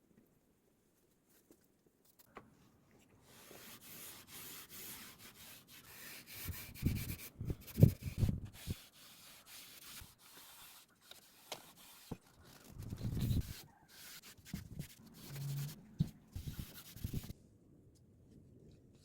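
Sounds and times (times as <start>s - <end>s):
rubbing and scraping on surface: 3.2s - 17.4s.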